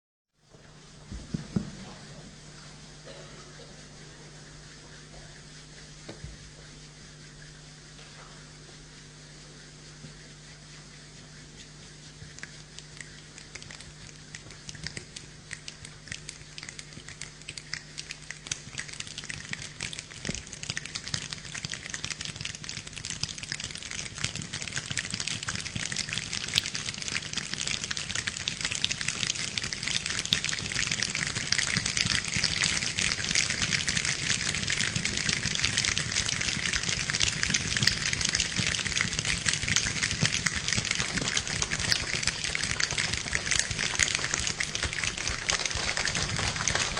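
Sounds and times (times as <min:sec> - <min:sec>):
hand clicks and slaps imitating rain: 0:12.3 - 0:46.9.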